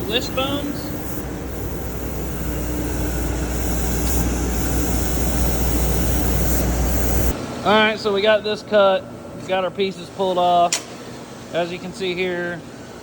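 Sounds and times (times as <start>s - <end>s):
laser cutter hissing and humming: 0.0s - 7.4s.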